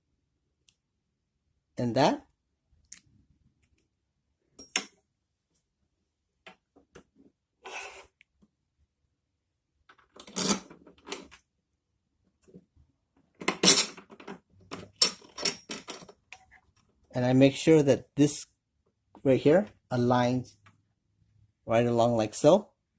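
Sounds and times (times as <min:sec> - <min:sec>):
hardware clicking and clattering: 0:13.2 - 0:17.0.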